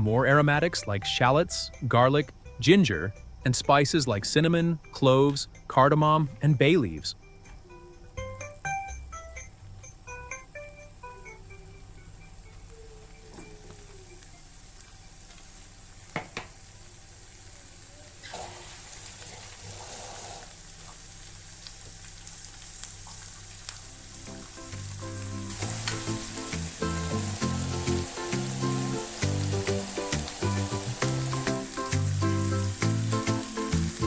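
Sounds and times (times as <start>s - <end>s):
background music: 0.0s - 14.6s, 24.0s - 34.0s
food sizzling in hot oil: 12.7s - 34.0s.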